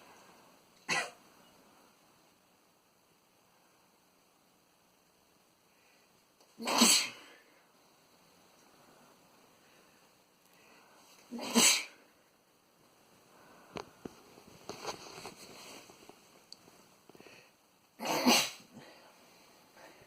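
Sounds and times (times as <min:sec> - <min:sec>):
man sneezing: 0:11.3 - 0:12.0, 0:18.0 - 0:18.7
rustles: 0:12.8 - 0:17.5.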